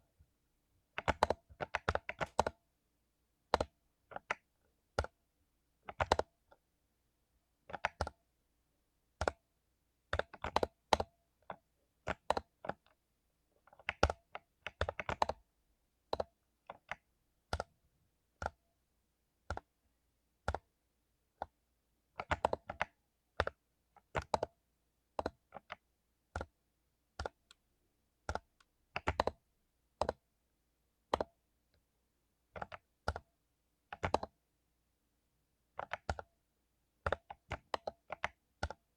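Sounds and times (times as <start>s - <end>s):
mechanical keyboard typing: 1.0s - 2.6s, 3.5s - 5.2s, 5.9s - 6.4s, 7.7s - 8.2s, 9.2s - 9.4s, 10.1s - 13.0s, 13.7s - 15.5s, 16.1s - 17.8s, 18.4s - 18.6s, 19.4s - 19.7s, 20.4s - 20.7s, 22.2s - 24.5s, 25.1s - 26.5s, 27.2s - 27.6s, 28.2s - 29.4s, 30.0s - 30.3s, 31.1s - 31.4s, 32.5s - 33.3s, 33.9s - 34.4s, 35.7s - 36.3s, 37.0s - 38.9s.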